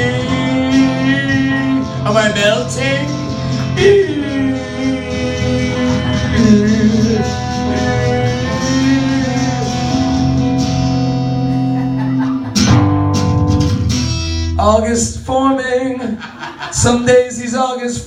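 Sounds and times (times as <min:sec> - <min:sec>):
person singing: 0:00.0 - 0:12.5
acoustic guitar chords: 0:00.0 - 0:17.2.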